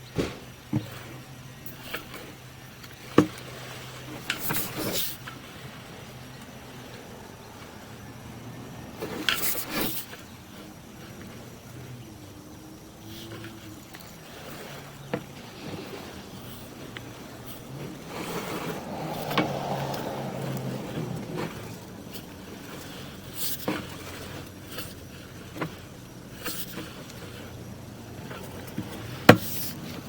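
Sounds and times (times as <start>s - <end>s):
passing car: 0.2s - 30.0s.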